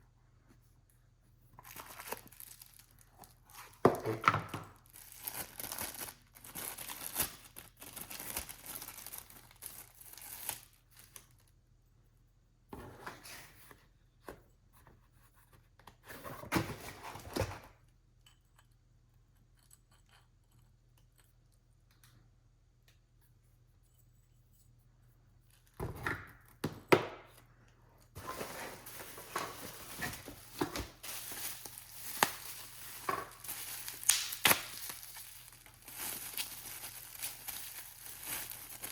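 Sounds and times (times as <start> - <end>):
wrapping rustling and tearing: 1.6 - 3.8, 4.6 - 11.5, 28.2 - 38.9.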